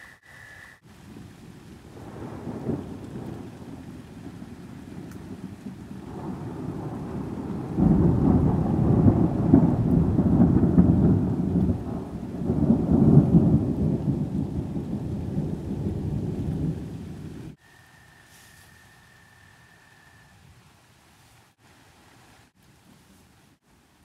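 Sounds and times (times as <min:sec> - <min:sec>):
thunder rumbling: 0:00.0 - 0:17.6
rain: 0:00.0 - 0:24.0.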